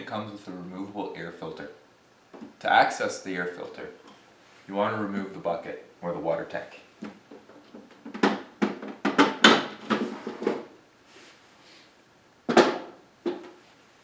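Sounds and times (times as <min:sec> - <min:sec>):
hollow plastic bucket clunks: 0:07.0 - 0:10.7.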